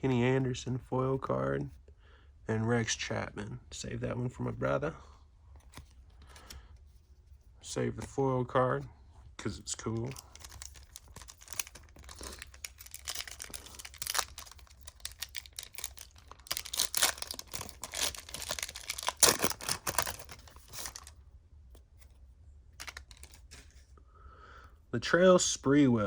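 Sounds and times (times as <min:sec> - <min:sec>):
trading cards shuffled by hand: 0:09.8 - 0:21.1, 0:22.8 - 0:23.8.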